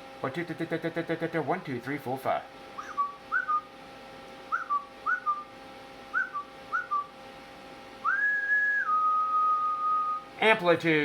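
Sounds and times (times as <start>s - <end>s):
person whistling: 2.8s - 3.7s, 4.5s - 5.5s, 6.1s - 7.1s, 8.0s - 10.2s.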